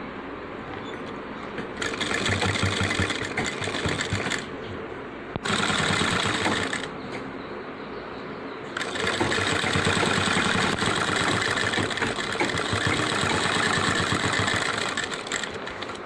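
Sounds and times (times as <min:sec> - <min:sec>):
sewing machine humming: 0:01.6 - 0:04.5, 0:05.4 - 0:06.9, 0:08.7 - 0:16.0
sewing machine stitching: 0:01.6 - 0:04.5, 0:05.4 - 0:06.9, 0:08.8 - 0:16.0.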